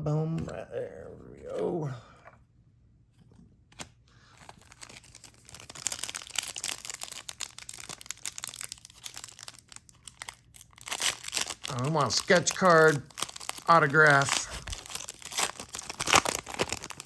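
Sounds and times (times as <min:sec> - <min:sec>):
card pack wrapper tearing and crinkling: 0:03.8 - 0:17.0.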